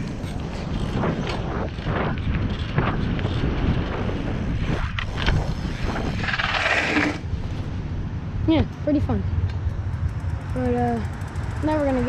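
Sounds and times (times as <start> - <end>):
bike tires rolling over dirt: 0.0 - 7.8
wind buffeting microphone: 0.0 - 12.0.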